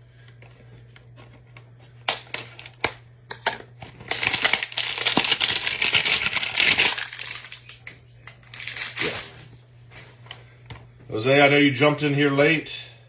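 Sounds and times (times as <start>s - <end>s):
wrapper crackling and crinkling: 3.8s - 9.5s.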